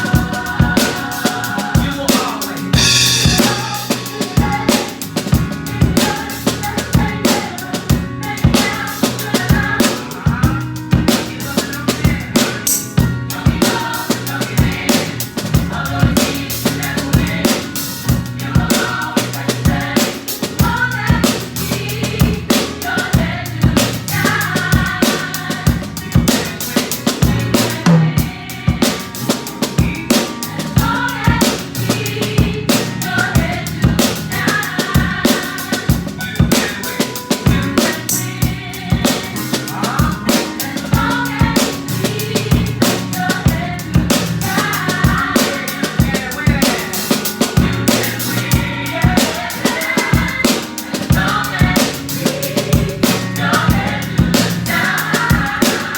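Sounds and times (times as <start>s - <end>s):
drum kit groove: 0.0s - 55.9s
song playing: 0.0s - 55.9s
vocal group singing: 0.0s - 55.9s.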